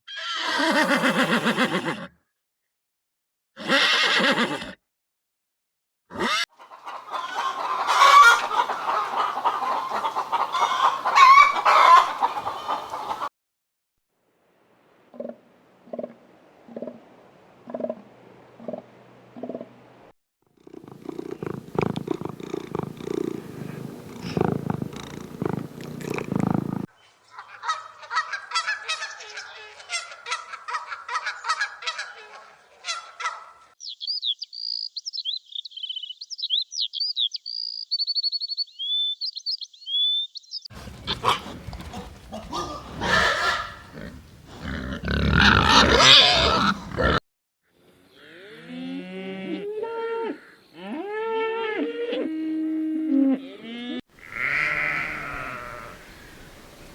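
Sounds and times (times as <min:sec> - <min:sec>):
rapid animal calls: 0:06.2 - 0:13.3, 0:20.7 - 0:26.9, 0:40.7 - 0:47.2, 0:54.2 - 0:56.9
animal calls falling in pitch: 0:40.8 - 0:47.2.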